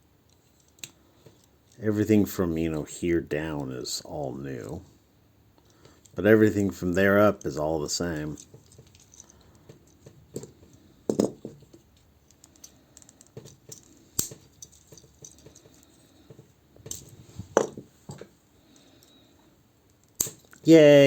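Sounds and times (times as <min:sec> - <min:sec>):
plastic toy parts clicking: 0:00.3 - 0:01.8, 0:19.9 - 0:20.6
sharp plastic clacks: 0:11.7 - 0:17.0, 0:19.9 - 0:20.6.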